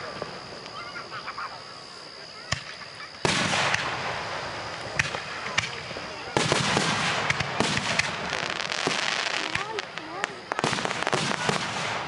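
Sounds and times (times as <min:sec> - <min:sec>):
crackling firework pops: 0:02.4 - 0:12.0
fireworks exploding: 0:02.4 - 0:12.0.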